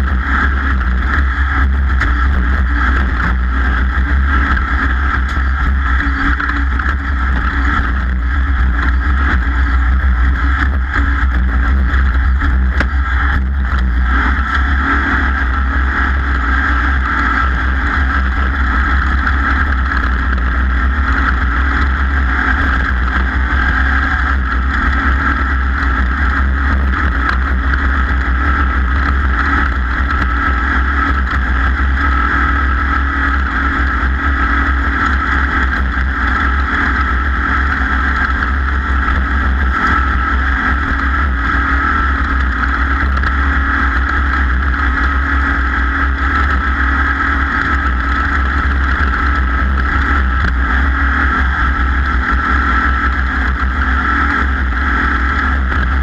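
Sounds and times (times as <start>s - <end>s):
racing engine running at high speed: 0.0s - 56.0s.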